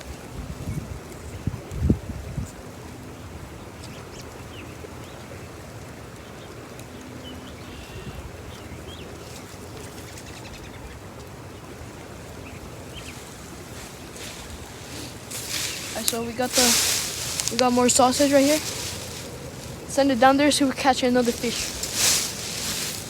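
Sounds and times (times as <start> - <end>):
creek water rushing: 10.9 - 23.0.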